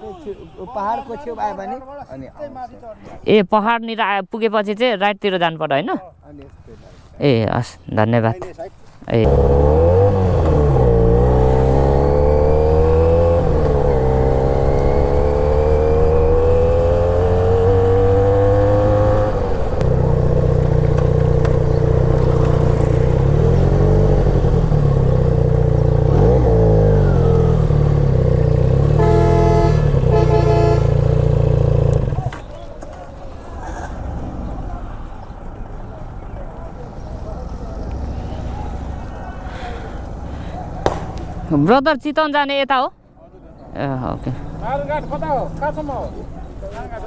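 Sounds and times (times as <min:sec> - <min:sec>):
motorcycle engine accelerating: 0:09.2 - 0:32.7
horn sounding: 0:28.3 - 0:32.1.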